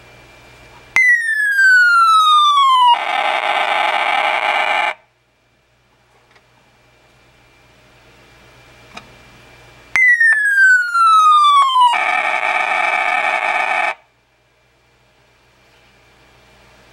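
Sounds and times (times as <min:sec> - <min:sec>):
falling electronic whistle: 0:01.0 - 0:05.0, 0:10.0 - 0:14.0
harsh electronic buzzing: 0:03.0 - 0:05.0, 0:12.0 - 0:14.0.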